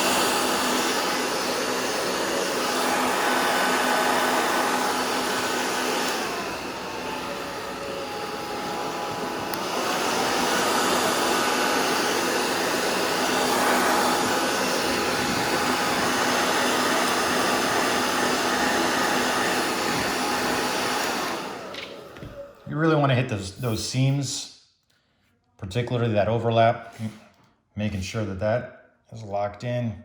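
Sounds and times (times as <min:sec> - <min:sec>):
hair dryer blowing: 0:00.0 - 0:23.8.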